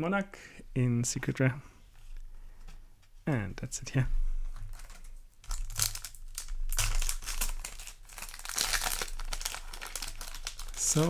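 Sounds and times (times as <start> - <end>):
foil wrappers crinkling: 4.6 - 11.0.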